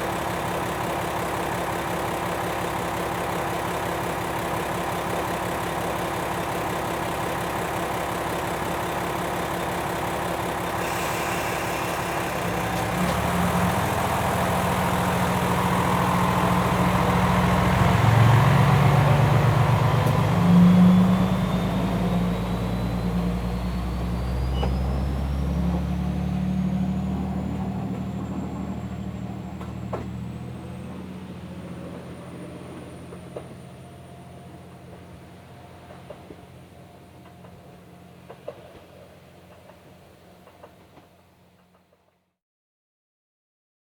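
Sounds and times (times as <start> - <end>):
diesel railcar engine: 0.0 - 42.1.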